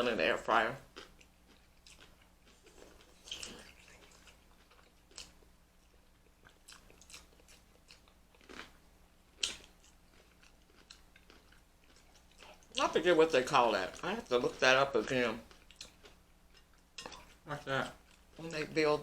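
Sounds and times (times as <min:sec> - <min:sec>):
chewing and biting food: 0:00.9 - 0:08.8, 0:09.4 - 0:12.8, 0:15.4 - 0:17.4.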